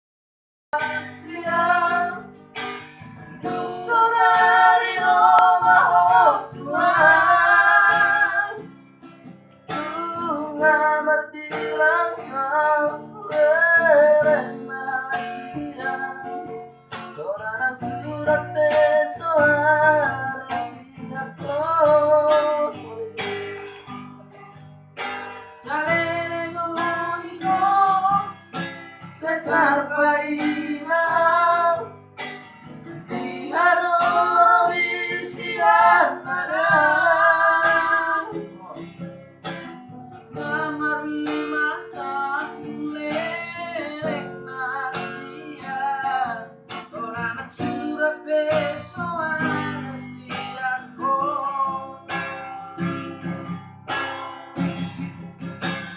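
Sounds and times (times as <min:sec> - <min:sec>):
acoustic guitar: 0:00.7 - 0:55.9
child singing: 0:03.4 - 0:08.7.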